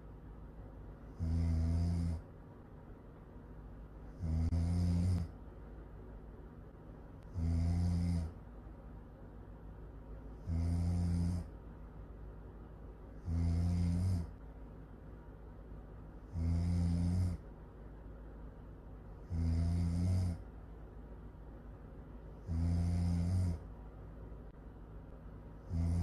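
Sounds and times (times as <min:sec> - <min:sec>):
loud rasping snoring: 0:01.1 - 0:02.2, 0:04.1 - 0:05.3, 0:07.3 - 0:08.4, 0:10.4 - 0:11.5, 0:13.2 - 0:14.4, 0:16.3 - 0:17.4, 0:19.2 - 0:20.4, 0:22.4 - 0:23.7, 0:25.6 - 0:26.0.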